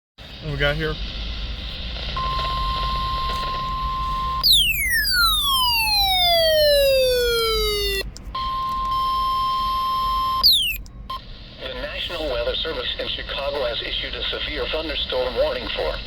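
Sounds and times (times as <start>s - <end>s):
steady warning beep tone: 2.2s - 11.3s.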